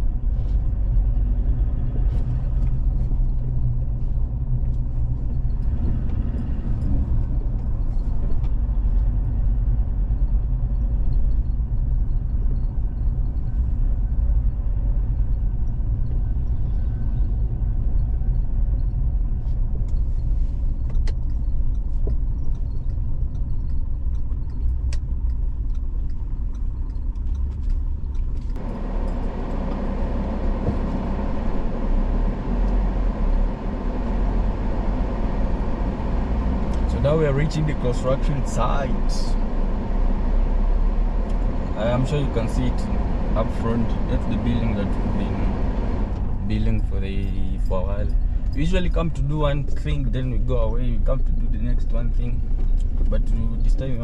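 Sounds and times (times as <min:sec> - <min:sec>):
vehicle road rumble: 0:00.0 - 0:54.0.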